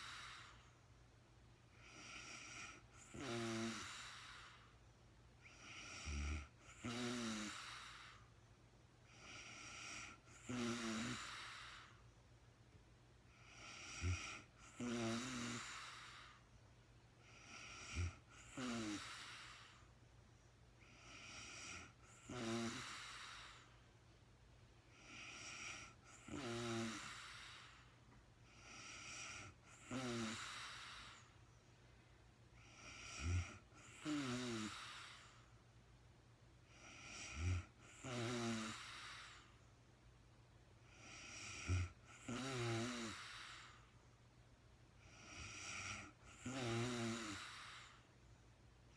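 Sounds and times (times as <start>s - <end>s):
woman snoring: 0.0s - 0.6s, 1.7s - 4.7s, 5.4s - 8.2s, 9.1s - 12.0s, 13.3s - 16.4s, 17.2s - 19.9s, 20.8s - 23.7s, 24.9s - 31.3s, 32.6s - 35.5s, 36.7s - 39.6s, 40.9s - 43.9s, 45.1s - 48.1s.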